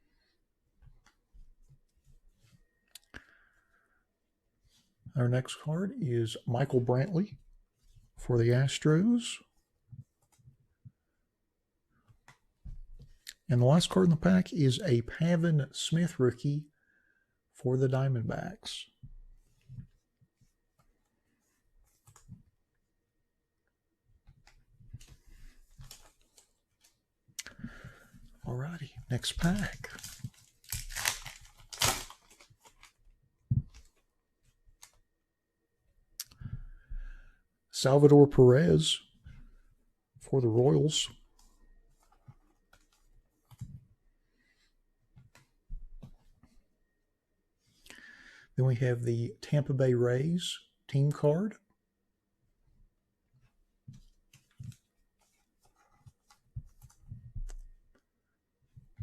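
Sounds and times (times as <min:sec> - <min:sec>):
trading cards clicking and rustling: 0:25.8 - 0:27.0, 0:29.2 - 0:33.0
foil wrapper crinkling: 0:29.4 - 0:33.0.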